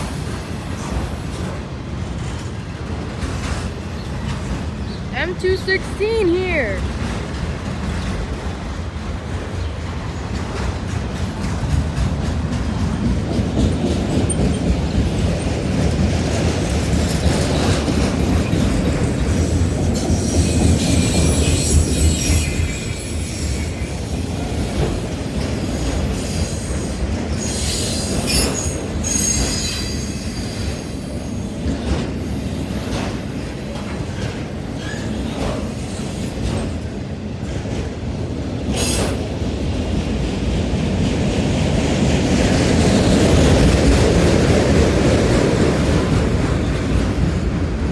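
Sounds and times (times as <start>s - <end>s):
train wheels rumbling on rail: 0.0s - 47.9s
wheel squeal: 20.0s - 24.0s, 25.8s - 31.6s, 38.7s - 39.3s.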